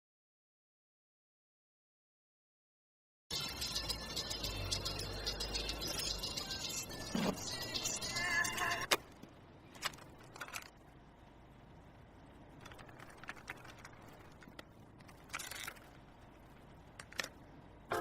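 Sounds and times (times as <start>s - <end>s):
low steady hum: 3.9s - 18.0s.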